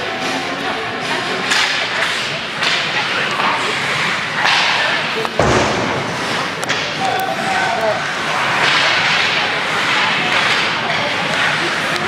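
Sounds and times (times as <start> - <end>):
skate blades scraping ice: 0.0 - 5.3, 6.0 - 12.0
heavy thud: 5.4 - 6.4.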